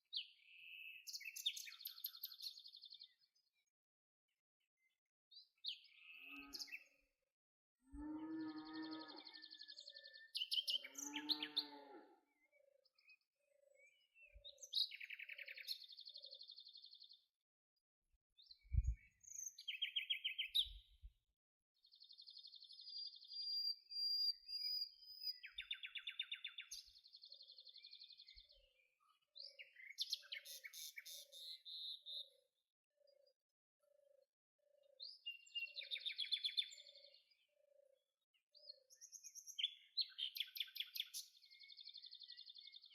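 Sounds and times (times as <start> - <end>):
birds trilling and chirping: 5.8 - 7.0, 7.9 - 16.4.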